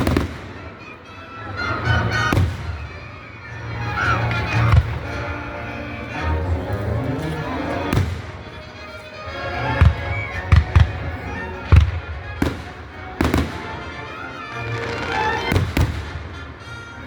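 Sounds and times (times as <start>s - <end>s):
fireworks bangs: 0.0s - 1.0s, 2.1s - 3.3s, 7.8s - 9.0s, 9.7s - 17.0s
music playing: 0.0s - 17.0s.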